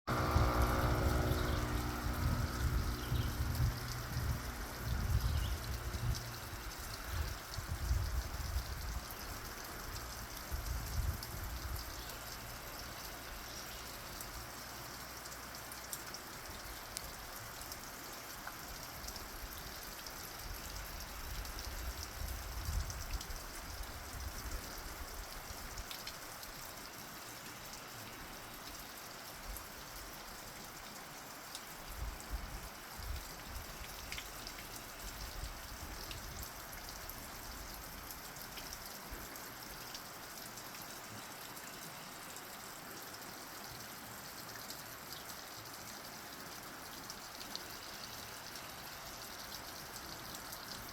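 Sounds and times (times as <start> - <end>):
low rumbles: 0.1 - 6.4
water trickling: 0.1 - 50.9.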